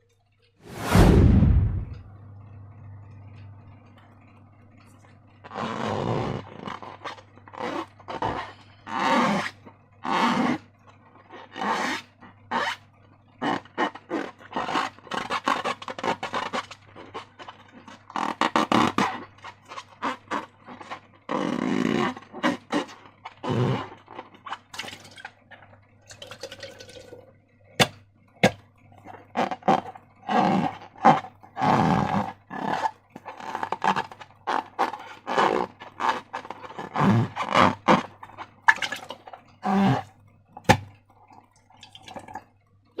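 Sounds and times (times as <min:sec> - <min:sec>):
rubbery squeaks: 0:05.4 - 0:12.8, 0:13.4 - 0:25.4, 0:29.0 - 0:40.8
slime squelching: 0:32.2 - 0:42.5.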